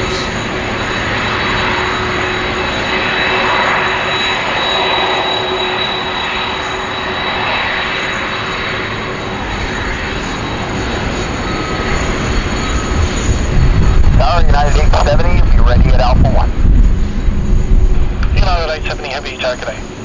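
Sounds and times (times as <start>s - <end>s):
jet engines whining: 0.0s - 20.0s.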